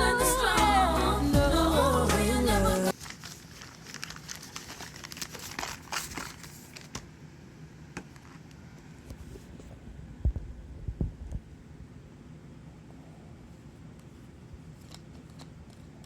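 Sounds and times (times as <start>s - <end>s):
packaging crinkling: 2.9s - 7.1s.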